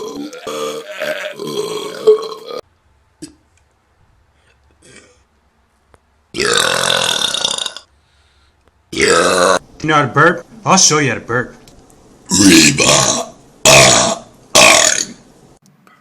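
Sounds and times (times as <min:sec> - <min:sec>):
person burping: 0:00.0 - 0:02.6, 0:06.4 - 0:07.9, 0:08.9 - 0:09.6, 0:12.3 - 0:15.2.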